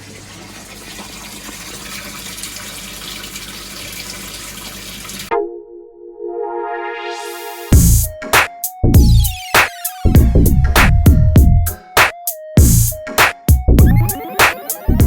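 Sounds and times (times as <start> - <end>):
water running and splashing: 0.0 - 5.3
electronic music: 5.3 - 15.0.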